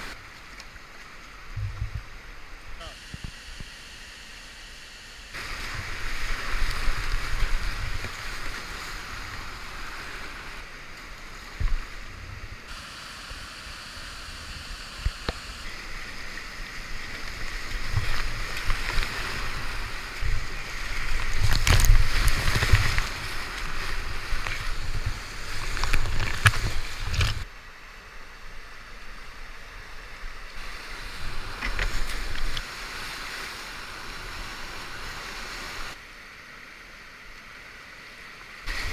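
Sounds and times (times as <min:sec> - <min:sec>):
whitewater rushing: 0:00.0 - 0:28.1, 0:29.0 - 0:36.0, 0:38.7 - 0:38.9
splashes: 0:14.9 - 0:27.5.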